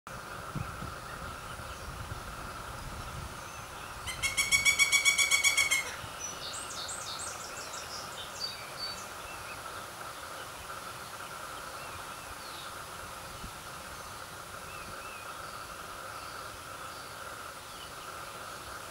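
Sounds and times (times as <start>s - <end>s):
faint insect hum: 0.1s - 18.9s
woodpecker calling: 3.5s - 7.7s.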